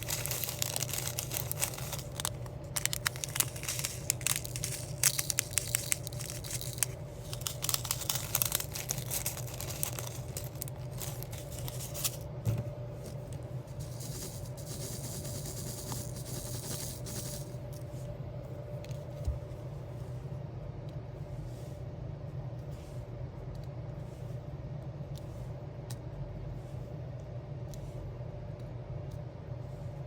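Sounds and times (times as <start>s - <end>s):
rustling and crinkling materials: 0.0s - 18.2s
low background hum: 0.0s - 30.0s.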